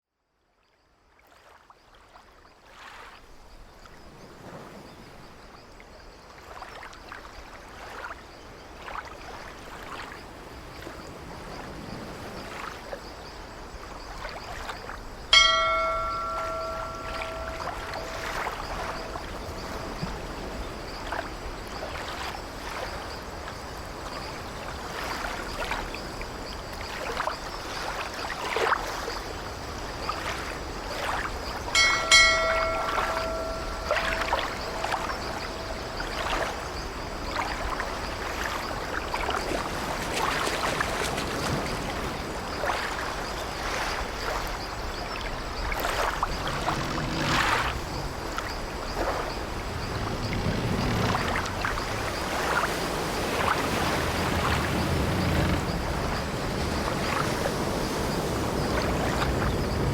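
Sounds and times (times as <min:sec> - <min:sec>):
waves washing against ship: 0:07.5 - 0:59.9
bell ringing: 0:15.4 - 0:19.8, 0:31.8 - 0:36.4.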